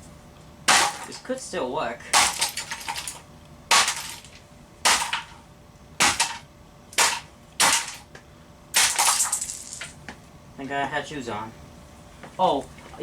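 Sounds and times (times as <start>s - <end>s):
camcorder being smashed: 8.8s - 9.5s.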